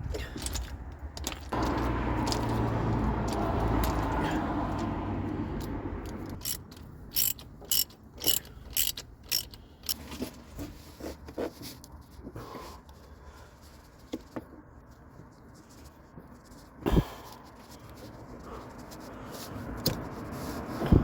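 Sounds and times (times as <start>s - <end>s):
ratchet spanner clicking: 5.6s - 10.1s.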